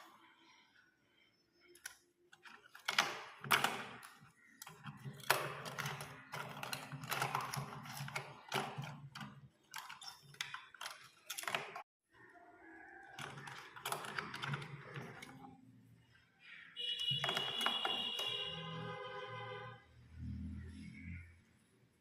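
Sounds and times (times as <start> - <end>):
plastic parts clicking and tapping: 1.6 - 11.9, 13.0 - 15.6, 16.8 - 18.6.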